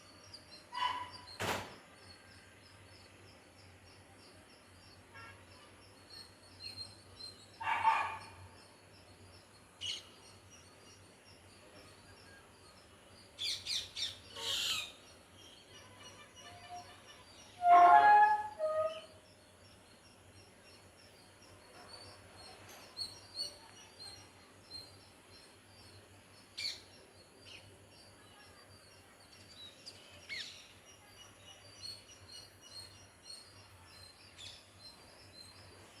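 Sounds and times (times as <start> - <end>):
bird chirps and calls: 13.4 - 19.1.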